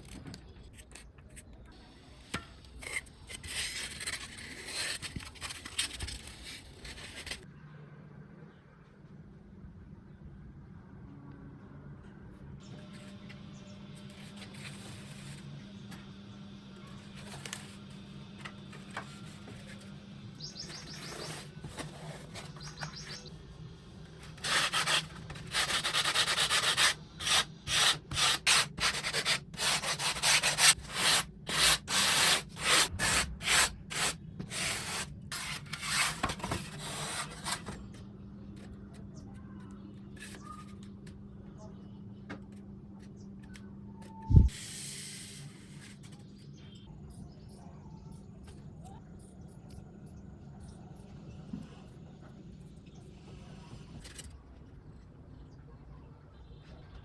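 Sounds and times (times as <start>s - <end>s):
sanding foam: 24.3s - 37.7s.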